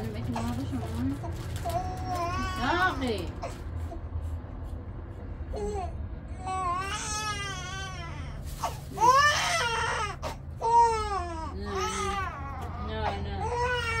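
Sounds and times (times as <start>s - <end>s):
steady low hum: 0.0s - 14.0s
baby crying: 5.5s - 14.0s.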